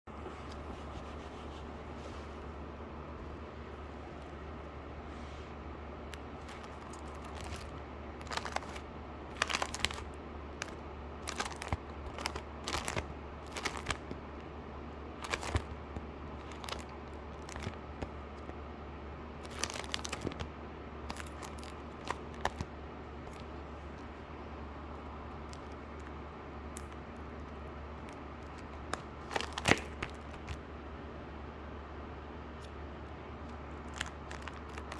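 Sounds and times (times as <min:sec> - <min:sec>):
packaging crinkling and tearing: 0:06.1 - 0:14.2, 0:15.2 - 0:18.5, 0:19.4 - 0:20.5, 0:21.1 - 0:24.1, 0:26.7 - 0:30.6, 0:33.5 - 0:34.9.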